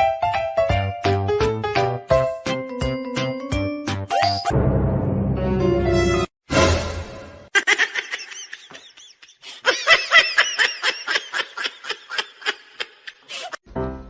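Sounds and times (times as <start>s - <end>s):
person laughing: 7.5s - 13.6s.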